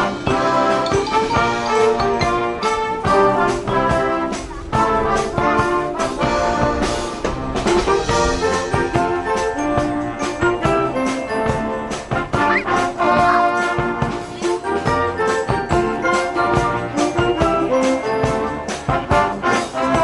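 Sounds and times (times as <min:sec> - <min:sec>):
marching band brass tune: 0:18.8 - 0:20.0.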